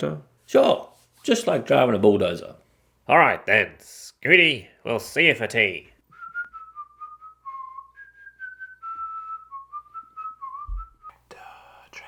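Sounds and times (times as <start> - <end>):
person whistling a tune: 6.1 - 11.2
soft low thump: 10.6 - 11.0.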